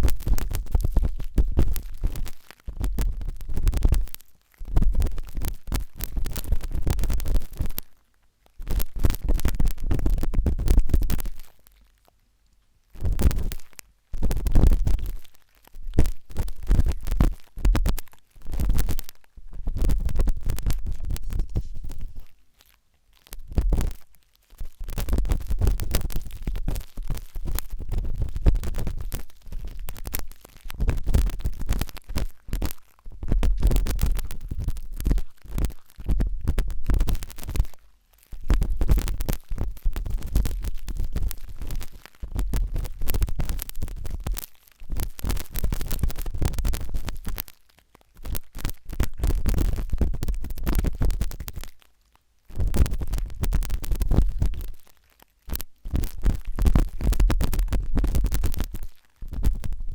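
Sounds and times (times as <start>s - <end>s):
toothpick scratching inside ear: 20.4s - 22.3s.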